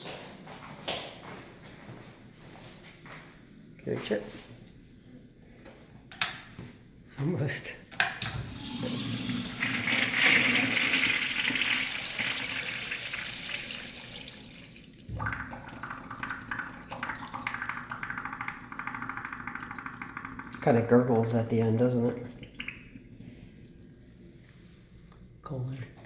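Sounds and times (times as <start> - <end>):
toilet flushing: 8.2 - 23.9
bubbly gurgling of draining bowl: 8.4 - 23.6.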